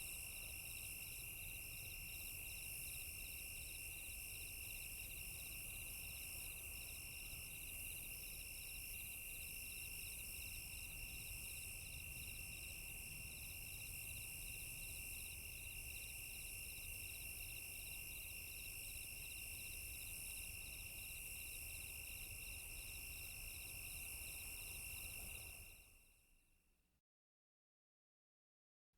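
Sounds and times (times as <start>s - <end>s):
crickets chirping: 0.0s - 26.2s.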